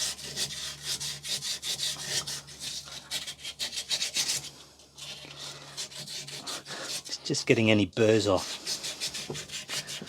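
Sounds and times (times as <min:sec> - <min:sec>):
sandpaper rubbing on metal: 0:00.0 - 0:07.2, 0:08.4 - 0:10.0.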